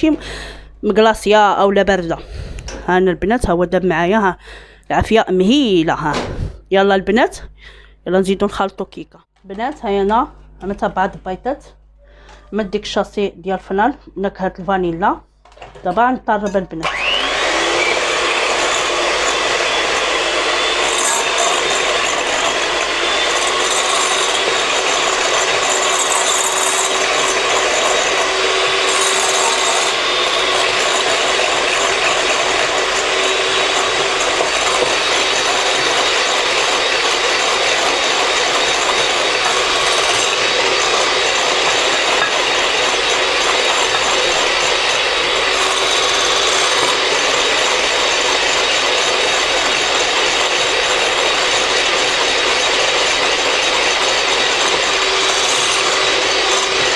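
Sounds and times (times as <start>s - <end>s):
electric mixer whipping batter: 16.8s - 56.9s.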